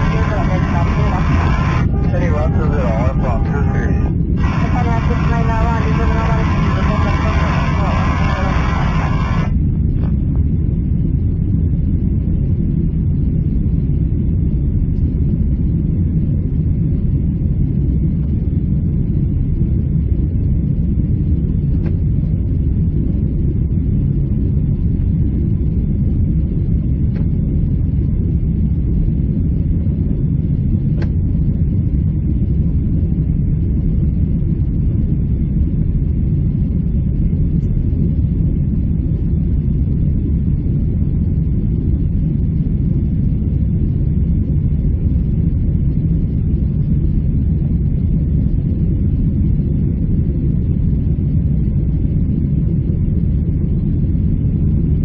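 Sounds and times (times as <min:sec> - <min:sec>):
jet engines and airflow rumble: 0:00.0 - 0:55.0.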